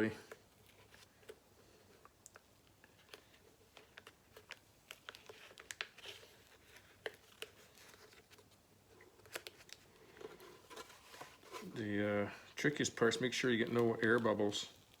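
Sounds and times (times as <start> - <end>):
paper crinkling: 0.2 - 15.0.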